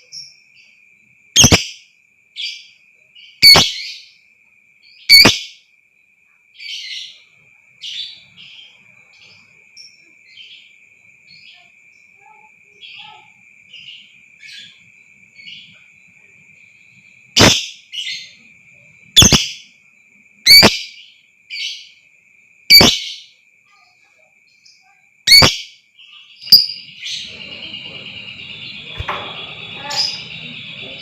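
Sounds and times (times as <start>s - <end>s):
lovebird shrill calls: 1.4s - 1.8s, 3.4s - 3.9s, 5.1s - 5.5s, 17.4s - 18.3s, 19.2s - 19.6s, 20.5s - 21.0s, 22.7s - 23.2s, 25.3s - 25.7s, 26.4s - 31.0s
steady high-pitched tone: 26.6s - 31.0s.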